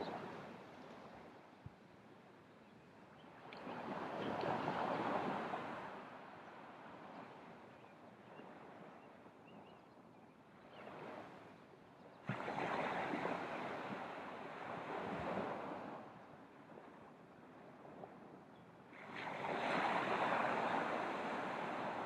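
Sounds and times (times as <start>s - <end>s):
low waves washing in: 0.0s - 1.5s, 12.3s - 22.0s.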